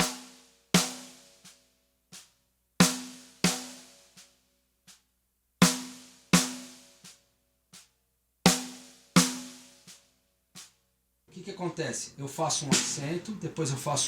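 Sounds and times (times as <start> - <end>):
snare drum accented strokes: 12.6 - 13.2
snare drum ghost notes: 12.6 - 13.4.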